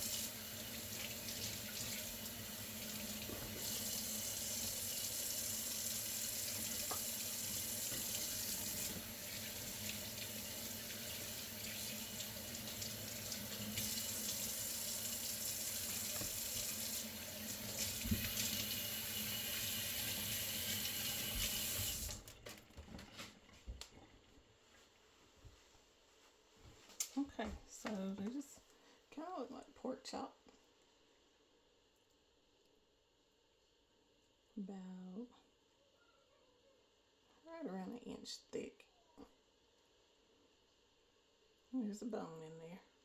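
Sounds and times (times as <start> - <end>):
tap running into sink: 6.4 - 7.2, 15.7 - 17.0, 17.7 - 18.8, 19.6 - 22.2.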